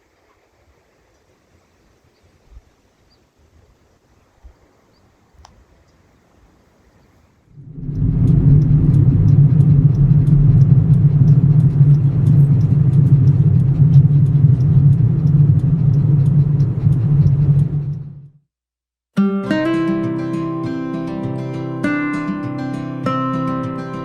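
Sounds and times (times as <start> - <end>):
loud low rumble: 7.6 - 18.5
faint clicks: 7.7 - 18.2.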